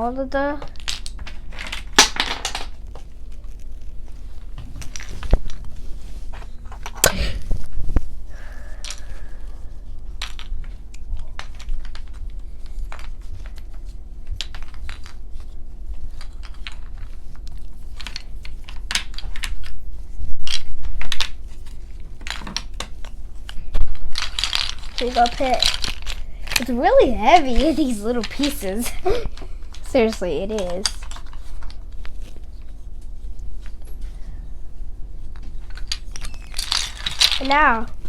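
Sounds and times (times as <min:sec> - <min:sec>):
wooden puzzle pieces clattering: 0:00.6 - 0:03.1, 0:24.2 - 0:31.8, 0:35.4 - 0:38.0.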